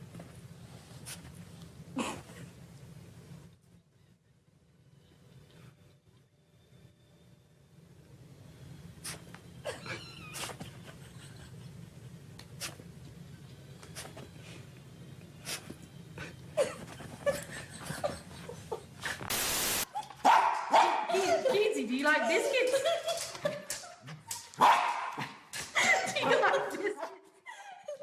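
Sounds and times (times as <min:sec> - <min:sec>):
burst of harsh noise: 0:19.3 - 0:19.9.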